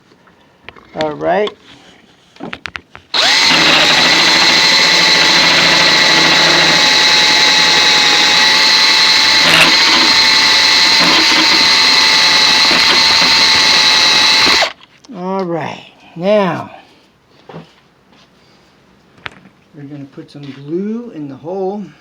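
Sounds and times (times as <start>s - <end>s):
electric drill whining: 3.1s - 14.8s.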